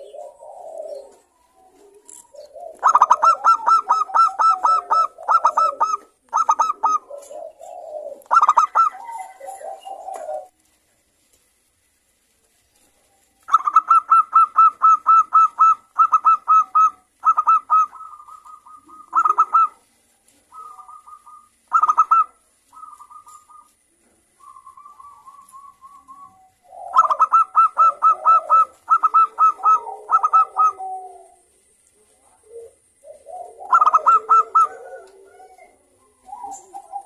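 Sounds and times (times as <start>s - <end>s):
dove cooing: 0.0s - 10.6s, 13.0s - 37.0s
low rough bird calls: 13.5s - 19.9s, 20.5s - 23.8s, 24.4s - 31.8s, 32.4s - 37.0s.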